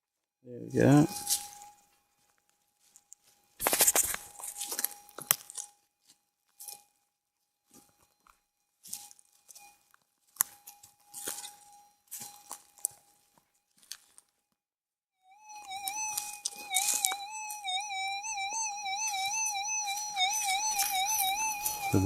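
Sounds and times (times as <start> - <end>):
metal detector tone humming: 0.7 - 1.9, 15.3 - 22.0
crackling rustling noise: 1.1 - 7.0.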